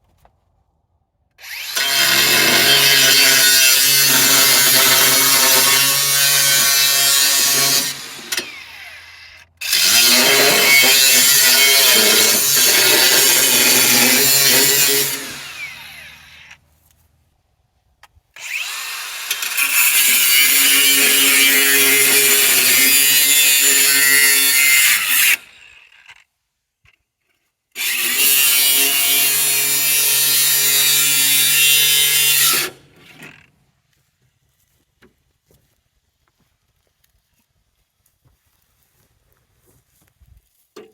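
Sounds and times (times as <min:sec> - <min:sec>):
angle grinder cutting metal: 0:01.4 - 0:16.6, 0:18.4 - 0:26.2, 0:27.8 - 0:33.5.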